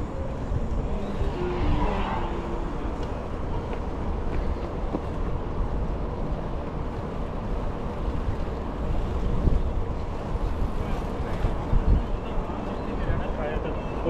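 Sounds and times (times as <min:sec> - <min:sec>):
bicycle tyre noise on pavement: 0:00.0 - 0:13.1
wind rumble on microphone: 0:00.0 - 0:13.3.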